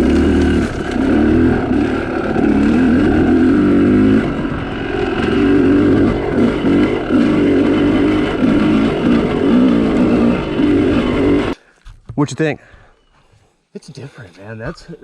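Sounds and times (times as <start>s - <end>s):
dirt bike engine revving: 0.0s - 11.6s.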